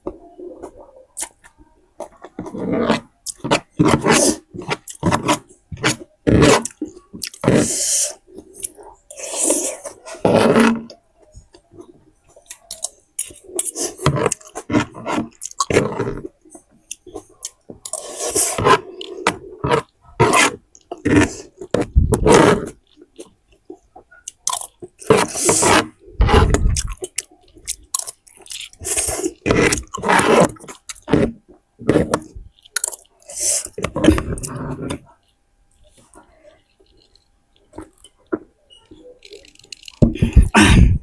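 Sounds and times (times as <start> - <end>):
slurping noodles: 2.3 - 11.0, 12.4 - 16.4, 17.0 - 23.0, 24.3 - 32.2, 33.2 - 35.0
wet chewing: 12.4 - 16.3, 16.9 - 31.4.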